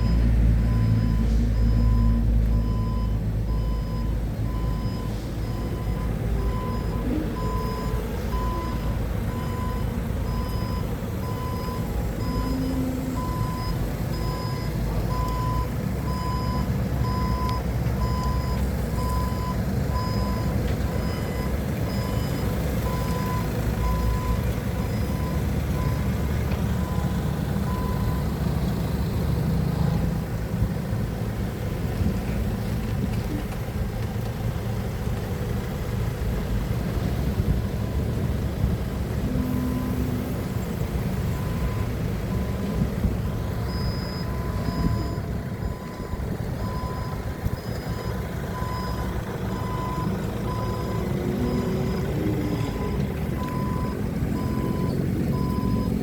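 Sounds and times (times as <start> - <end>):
reversing alarm beeping: 0.0 - 28.4, 39.2 - 40.5, 41.2 - 56.0
forklift engine running: 0.0 - 56.0.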